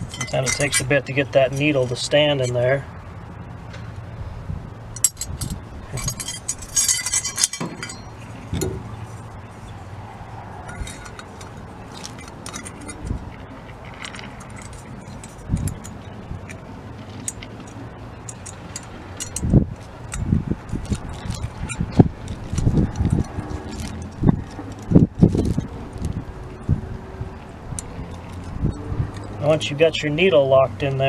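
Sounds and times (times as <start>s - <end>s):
small metal parts clinking: 0.0s - 1.8s, 4.9s - 9.4s, 10.6s - 26.7s, 27.7s - 29.4s.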